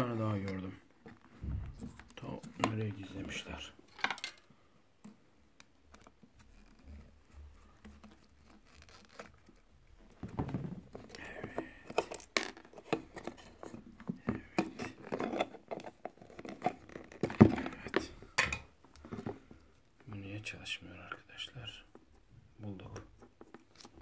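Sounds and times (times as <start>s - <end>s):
plastic parts clicking and knocking: 0.4s - 7.1s, 7.8s - 19.6s.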